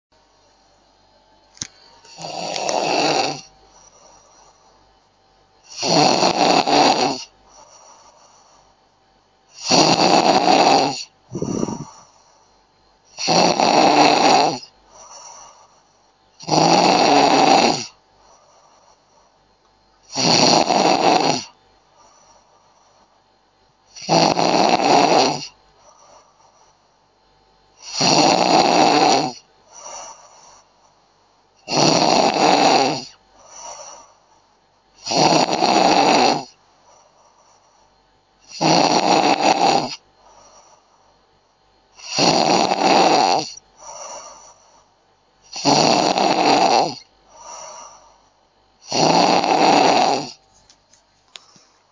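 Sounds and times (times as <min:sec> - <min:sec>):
person snoring: 0:02.1 - 0:04.6, 0:05.6 - 0:08.2, 0:09.5 - 0:12.2, 0:13.1 - 0:15.8, 0:16.4 - 0:18.0, 0:20.0 - 0:22.4, 0:23.9 - 0:26.6, 0:27.8 - 0:30.7, 0:31.6 - 0:34.2, 0:35.0 - 0:36.6, 0:38.4 - 0:40.9, 0:42.0 - 0:44.8, 0:45.4 - 0:48.2, 0:48.8 - 0:50.4.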